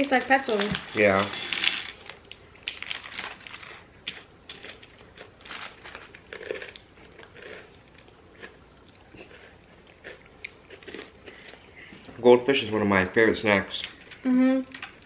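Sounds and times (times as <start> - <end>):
people chewing crunchy crackers: 1.9 - 12.2.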